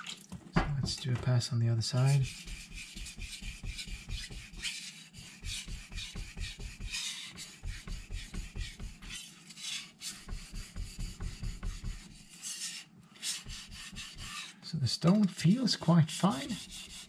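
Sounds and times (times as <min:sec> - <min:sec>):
knife scraping on whetstone: 0:02.0 - 0:07.7, 0:08.6 - 0:10.5, 0:11.9 - 0:17.0.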